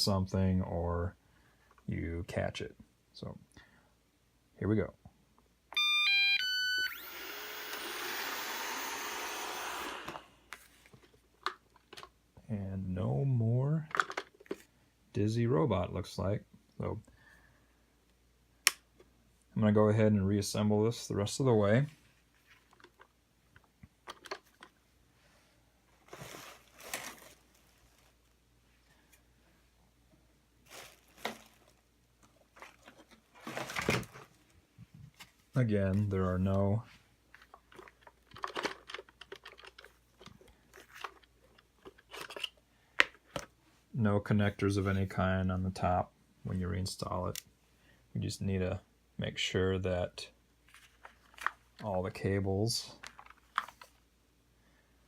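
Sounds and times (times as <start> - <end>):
robot vacuum motors running: 6.7 - 10.3
small plastic clicks: 37.4 - 43.2.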